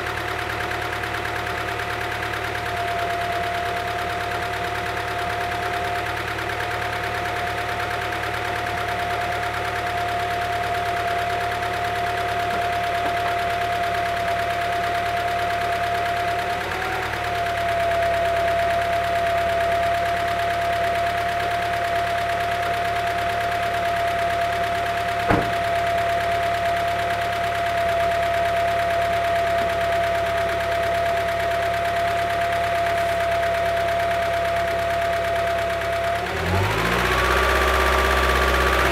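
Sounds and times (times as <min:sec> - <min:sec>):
car engine idling: 0:00.0 - 0:38.9.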